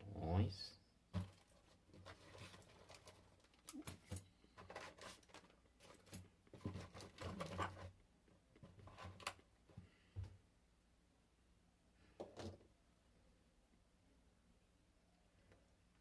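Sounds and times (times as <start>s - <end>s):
small parts clicking and rustling: 1.1s - 7.9s.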